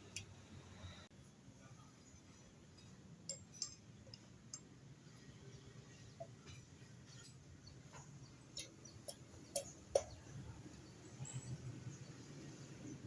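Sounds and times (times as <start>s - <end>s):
sharp metallic clicks and clinks: 3.3s - 4.7s.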